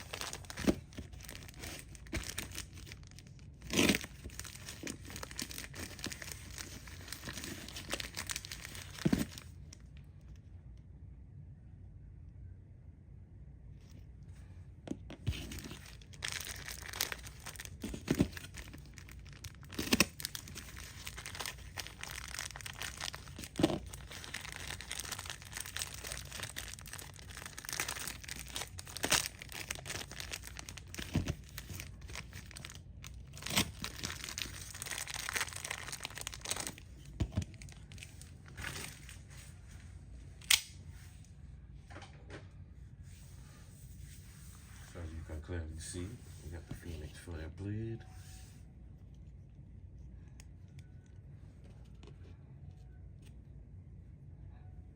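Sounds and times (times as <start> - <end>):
packaging tearing and crinkling: 0.0 - 9.5, 15.3 - 39.1.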